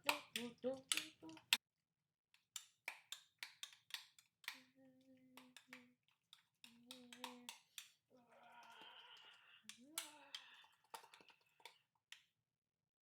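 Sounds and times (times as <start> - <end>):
person humming: 0.0 - 1.6, 4.6 - 6.0, 6.6 - 10.8
utensil clicking against bowl: 0.0 - 1.6, 2.4 - 12.3.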